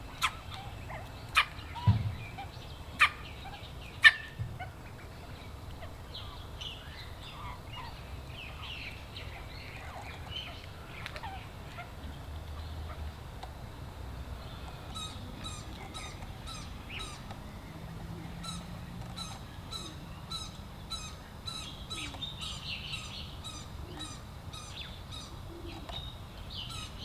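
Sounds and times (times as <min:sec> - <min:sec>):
faint bird chirps: 0:14.4 - 0:27.0.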